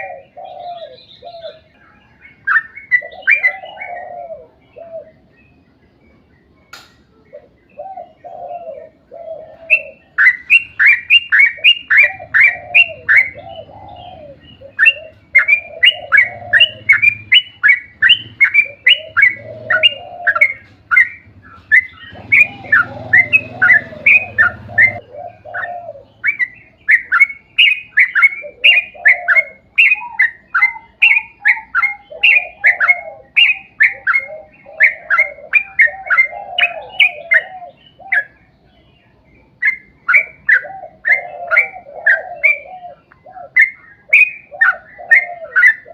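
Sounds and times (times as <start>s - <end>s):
bulbul singing rapid whistled notes: 9.7s - 38.4s, 43.5s - 45.9s.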